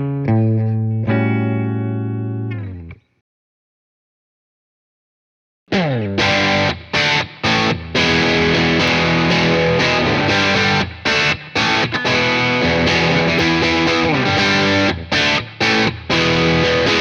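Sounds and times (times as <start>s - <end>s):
distorted electric guitar chords: 0.0s - 2.9s, 5.7s - 17.0s.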